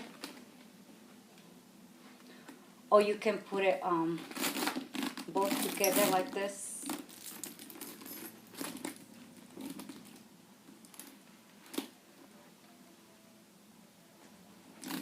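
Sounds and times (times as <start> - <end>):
leather strap rustling: 4.2 - 10.2, 14.8 - 15.0
chain strap clinking: 4.3 - 10.2.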